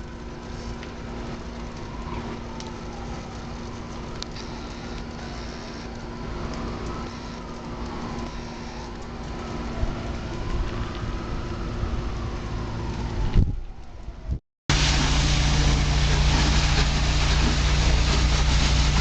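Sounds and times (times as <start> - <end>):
crackling hiss: 0.0 - 11.2
engine rumble: 0.0 - 19.0
fire engine siren wailing: 0.0 - 19.0.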